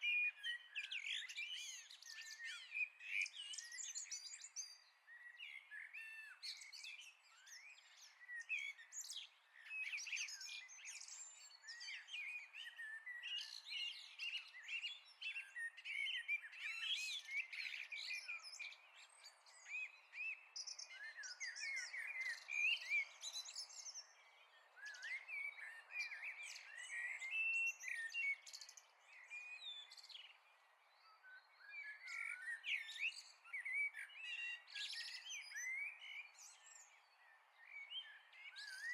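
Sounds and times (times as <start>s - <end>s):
songbirds chirping and trilling: 0.0s - 38.9s.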